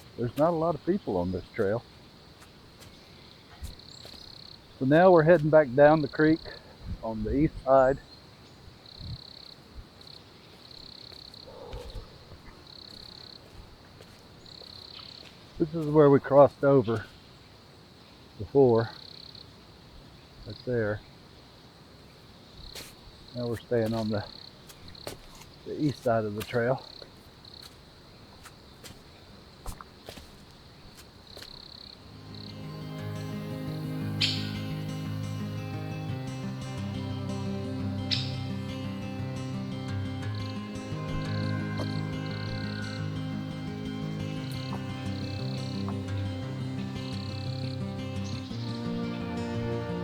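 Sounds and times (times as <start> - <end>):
footsteps on dirt trail: 0.0 - 6.3, 9.8 - 17.3, 22.6 - 33.2, 39.7 - 49.0
soft scuff: 3.6 - 4.3, 22.7 - 26.6, 27.2 - 31.6
insect trilling: 10.8 - 13.5, 31.6 - 48.6
music: 32.0 - 50.0.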